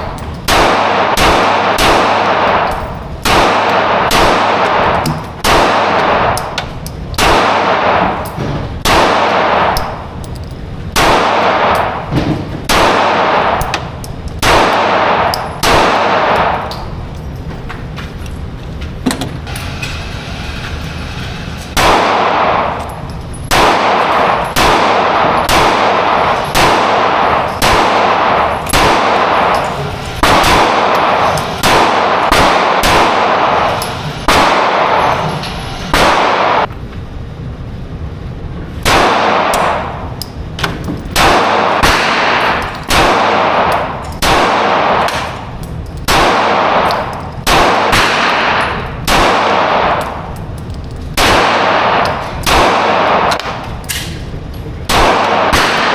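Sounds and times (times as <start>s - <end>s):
rapid gunfire: 0.4s - 6.4s, 23.5s - 35.3s, 51.1s - 53.6s, 54.9s - 55.9s.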